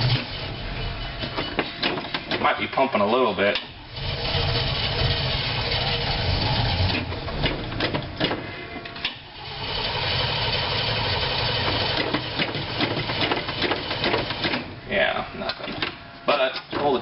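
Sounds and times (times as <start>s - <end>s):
engine cranking on starter: 3.9s - 8.0s, 9.4s - 14.6s.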